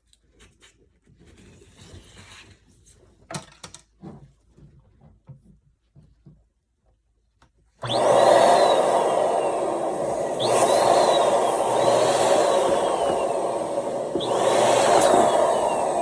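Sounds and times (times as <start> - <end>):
electric pump whirring: 7.8 - 16.0.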